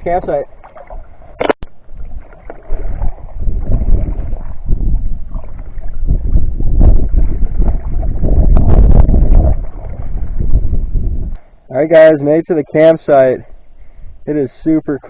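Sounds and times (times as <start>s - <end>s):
wind buffeting microphone: 0.0s - 11.4s, 13.5s - 14.3s
canoe paddling: 0.0s - 15.0s.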